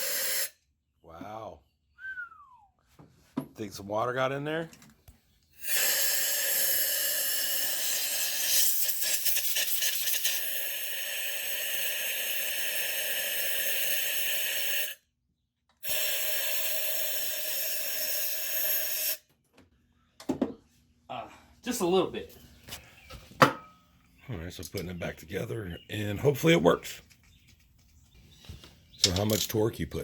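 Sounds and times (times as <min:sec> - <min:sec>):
compressed-air blow gun hissing: 0:00.0 - 0:00.5, 0:05.6 - 0:15.0, 0:15.8 - 0:19.1.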